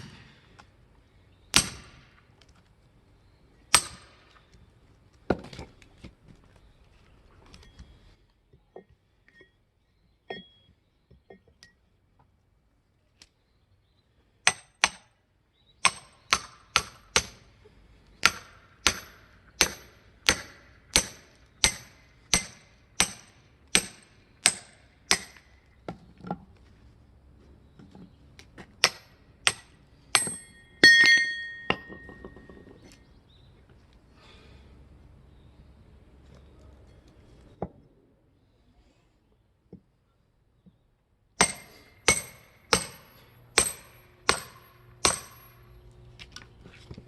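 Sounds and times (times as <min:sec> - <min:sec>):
tool strikes splitting firewood: 0:01.5 - 0:02.1, 0:03.7 - 0:04.1, 0:14.5 - 0:15.1, 0:15.8 - 0:17.4, 0:18.2 - 0:25.5, 0:28.8 - 0:32.3, 0:41.4 - 0:45.6.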